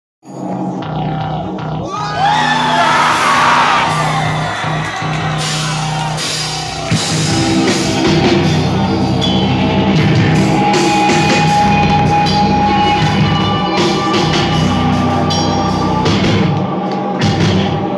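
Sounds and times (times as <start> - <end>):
rock band playing live: 2.3 - 16.5.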